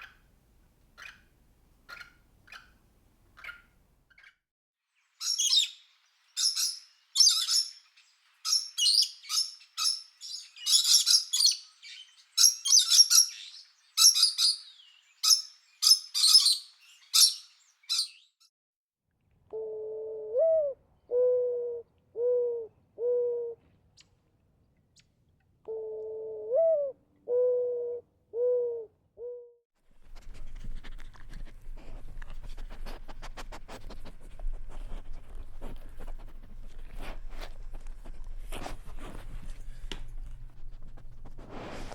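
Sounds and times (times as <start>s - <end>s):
small bird chirping: 5.0s - 18.4s
dove cooing: 19.5s - 23.6s, 25.7s - 29.4s
faint scratchy rustling: 29.9s - 41.9s.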